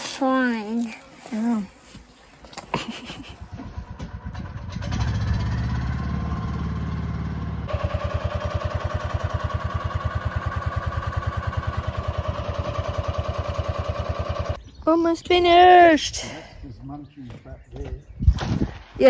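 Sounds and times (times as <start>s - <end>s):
wood chipper engine running: 3.5s - 14.6s.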